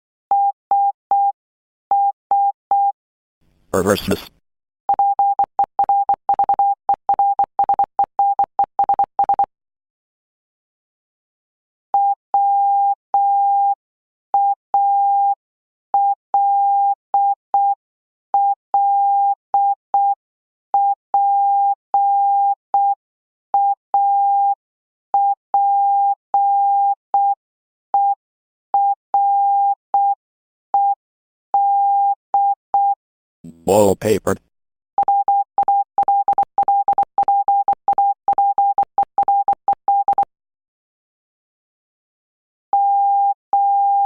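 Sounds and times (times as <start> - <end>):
morse code beeps: 35.0 - 40.2.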